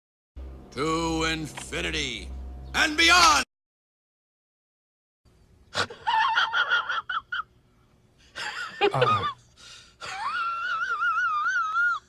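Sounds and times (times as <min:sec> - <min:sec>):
high-pitched wheezing laugh: 0:05.7 - 0:07.5, 0:08.4 - 0:12.0.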